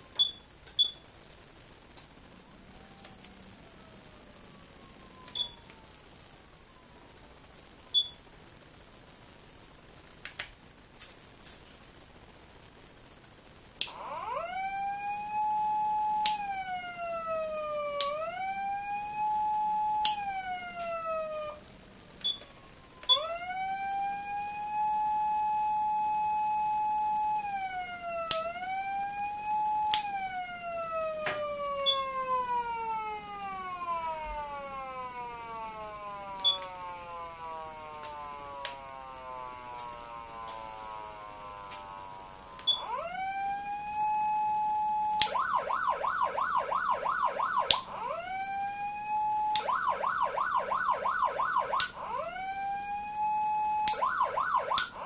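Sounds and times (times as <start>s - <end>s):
electronic siren wailing: 0.0s - 1.1s, 2.3s - 8.2s, 13.8s - 55.0s
siren fast warble: 2.4s - 6.0s, 13.9s - 55.0s
sharp clicks: 10.2s - 11.8s, 13.8s - 14.6s, 16.1s - 16.9s, 17.9s - 18.4s, 19.2s - 23.6s, 27.0s - 28.6s, 29.5s - 30.5s, 31.2s - 43.0s, 45.1s - 48.2s, 49.4s - 52.2s, 53.8s - 55.0s.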